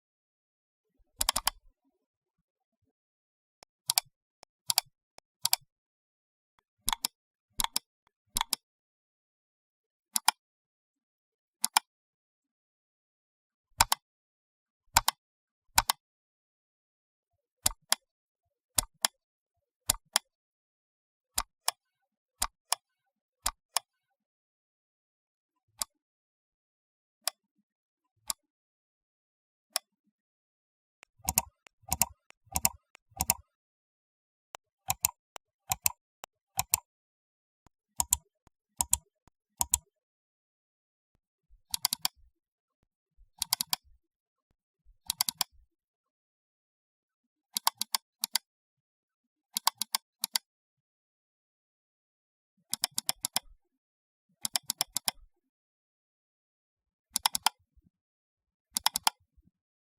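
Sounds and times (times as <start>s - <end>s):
sharp clicks: 31.0s - 33.4s, 34.6s - 36.8s, 38.0s - 39.8s.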